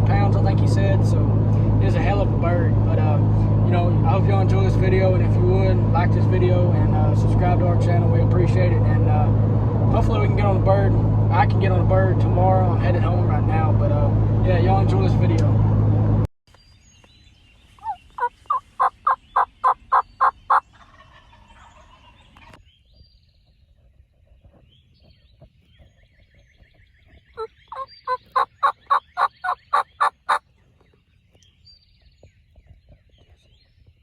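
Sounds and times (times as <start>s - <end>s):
turkey calling: 17.8s - 22.5s, 27.4s - 30.4s.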